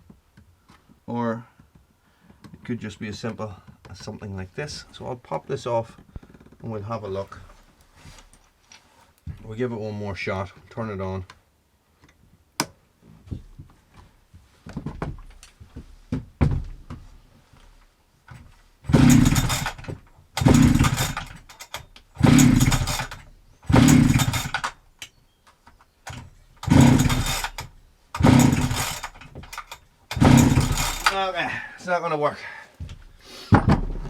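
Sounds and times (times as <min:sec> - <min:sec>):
chainsaw recoil starter pulls: 0:18.9 - 0:25.2, 0:26.0 - 0:31.5.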